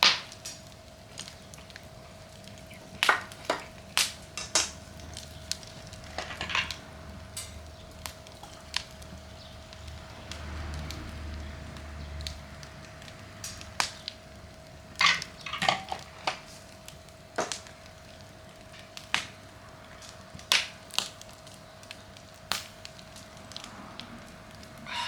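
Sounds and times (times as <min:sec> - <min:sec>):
campfire crackling and popping: 0:00.0 - 0:25.0
faint fire hiss: 0:00.0 - 0:25.0.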